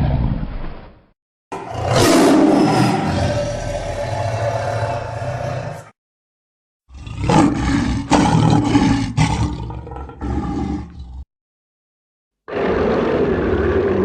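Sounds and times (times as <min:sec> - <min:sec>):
cartoon villain growling roar: 0:01.6 - 0:05.9.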